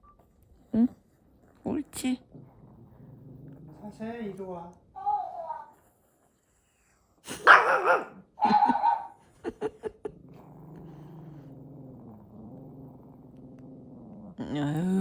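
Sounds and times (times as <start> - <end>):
dog growling: 0.5 - 4.4, 5.1 - 9.1, 9.8 - 15.0
small dog barking: 7.4 - 9.2.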